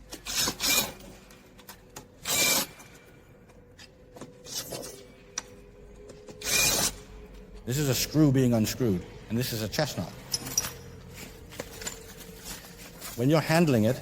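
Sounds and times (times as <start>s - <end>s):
tools scraping and rubbing: 3.7s - 7.4s, 10.2s - 13.8s.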